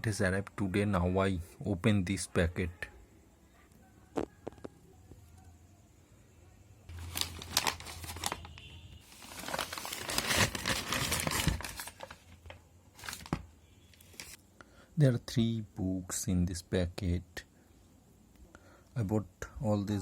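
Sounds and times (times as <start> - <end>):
packaging crinkling and tearing: 6.9 - 14.4.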